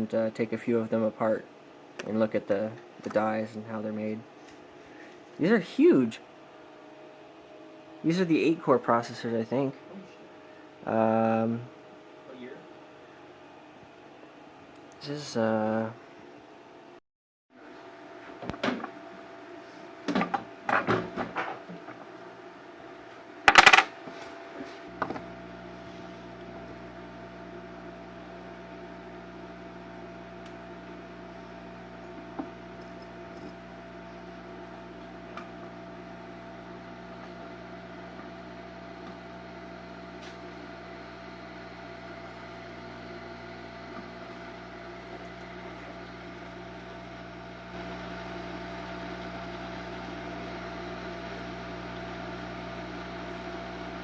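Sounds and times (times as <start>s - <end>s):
heat gun fan humming: 23.6s - 54.0s.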